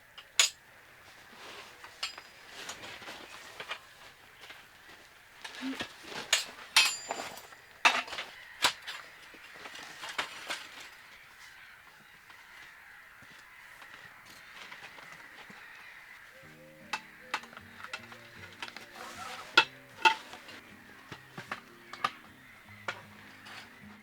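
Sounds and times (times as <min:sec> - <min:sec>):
sharp knocks and clinks: 0:06.3 - 0:08.2.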